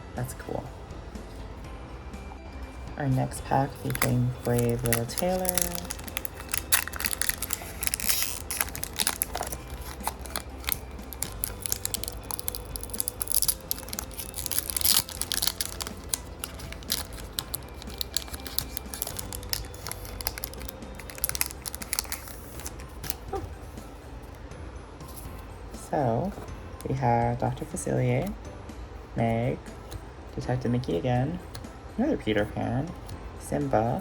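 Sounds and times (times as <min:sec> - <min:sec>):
cards being flicked through: 0:03.1 - 0:23.6
plastic wrapper tearing and crinkling: 0:03.7 - 0:23.4.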